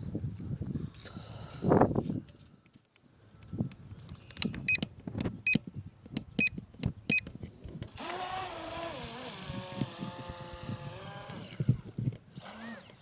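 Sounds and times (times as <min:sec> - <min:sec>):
rc boat electric motor whine: 0:07.9 - 0:13.0.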